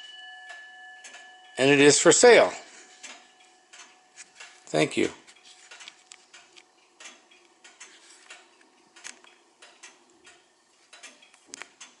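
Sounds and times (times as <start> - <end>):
clock ticking: 0.0 - 5.1, 9.3 - 12.0.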